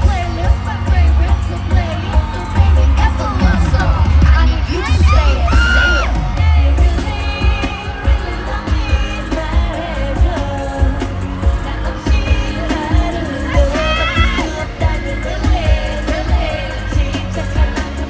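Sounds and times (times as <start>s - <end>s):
pop backing track with bass beat: 0.0s - 18.0s
women singing: 0.0s - 18.0s.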